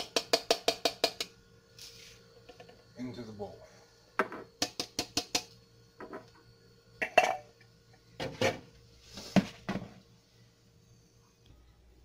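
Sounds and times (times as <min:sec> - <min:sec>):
bowls knocking and clinking: 0:07.0 - 0:07.5.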